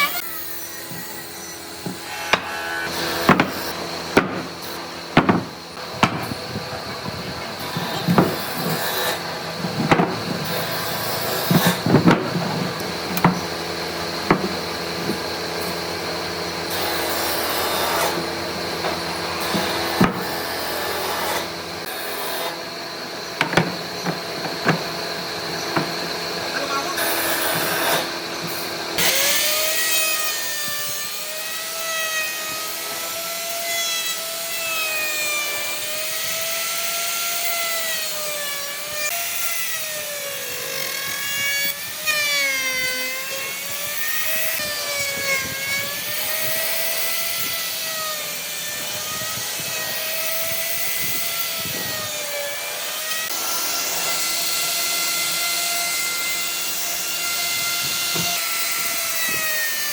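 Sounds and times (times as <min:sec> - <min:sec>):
power tool motor whining: 0:00.0 - 0:59.9
wood being cut or abraded: 0:00.0 - 0:59.9.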